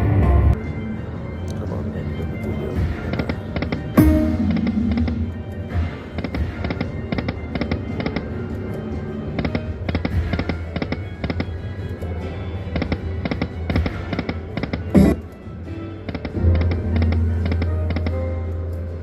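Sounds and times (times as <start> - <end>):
electronic music loop: 1.6 - 6.8, 14.8 - 15.2
electronic clicks and chimes: 14.9 - 15.2.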